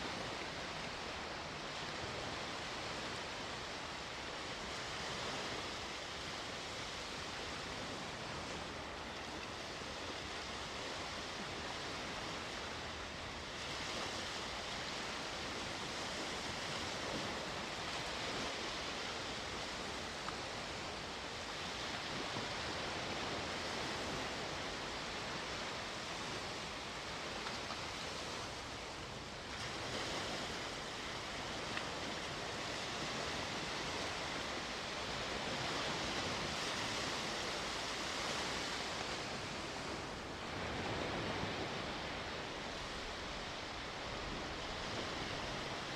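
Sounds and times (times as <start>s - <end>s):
sea waves breaking on shore: 0.0s - 45.9s.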